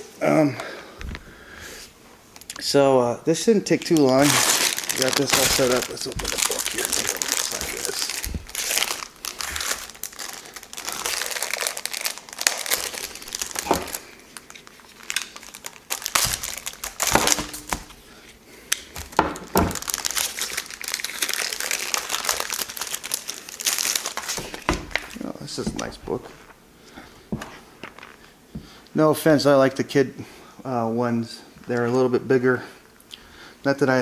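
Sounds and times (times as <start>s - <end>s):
packaging crinkling and tearing: 3.6s - 18.1s, 18.7s - 26.6s.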